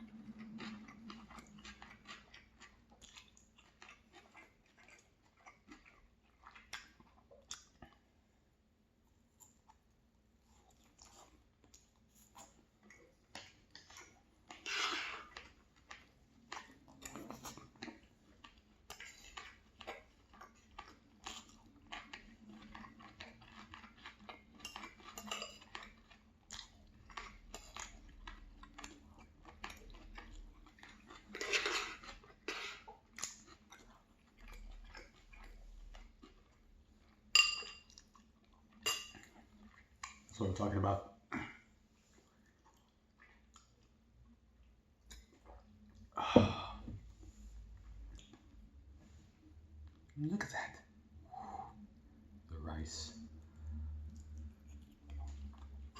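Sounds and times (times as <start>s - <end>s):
chewing: 0.0s - 8.4s, 9.1s - 46.2s, 47.1s - 52.3s, 53.2s - 55.9s
cutlery clinking and scraping on plate: 24.6s - 25.8s, 31.4s - 32.8s, 38.8s - 39.3s.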